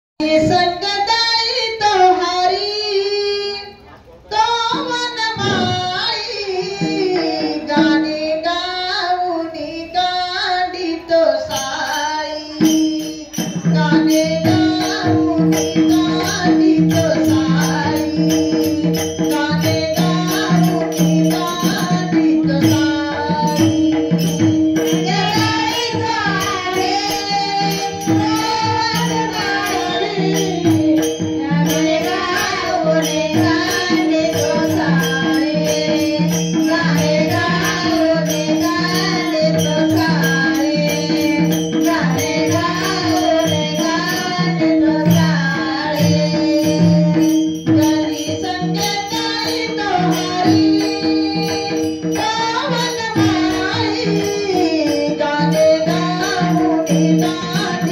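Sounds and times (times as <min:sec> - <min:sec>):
hand cymbals jingling: 0:04.4 - 0:57.9
drum strokes: 0:04.7 - 0:08.6.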